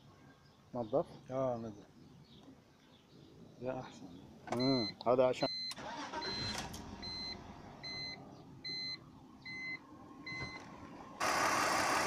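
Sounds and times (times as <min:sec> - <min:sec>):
electronic warning beeps: 0:04.6 - 0:10.6.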